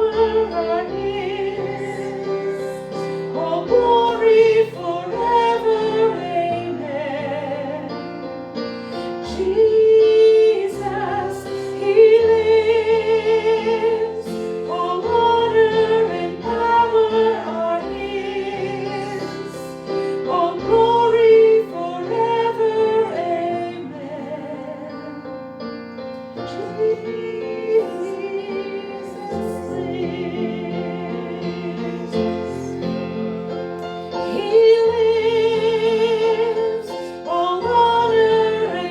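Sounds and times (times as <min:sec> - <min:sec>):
piano accompaniment: 0:00.0 - 0:38.9.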